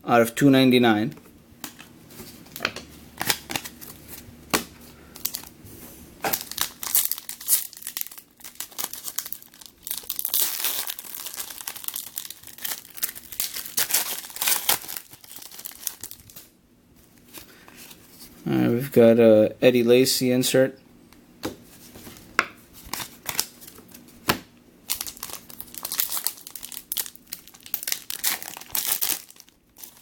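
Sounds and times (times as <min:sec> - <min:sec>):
wrapper crinkling and tearing: 0:02.4 - 0:05.5, 0:06.3 - 0:16.5, 0:22.8 - 0:24.0, 0:24.9 - 0:30.0.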